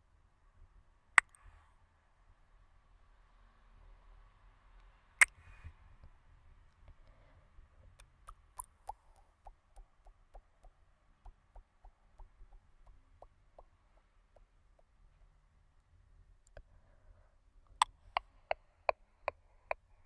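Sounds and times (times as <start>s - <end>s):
soft tongue clicks: 8.0s - 14.9s, 17.8s - 19.9s.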